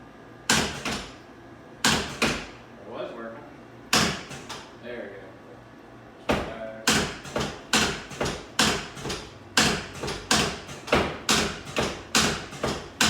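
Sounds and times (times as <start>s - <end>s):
sharp thumps of adjusting device: 6.3s - 13.0s.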